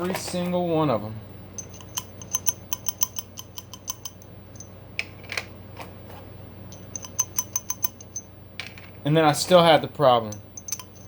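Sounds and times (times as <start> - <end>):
cartridges scraping: 1.6 - 5.5, 6.7 - 9.0, 10.2 - 11.0
metal cartridges clinking: 1.6 - 5.5, 6.7 - 9.0, 10.2 - 11.0.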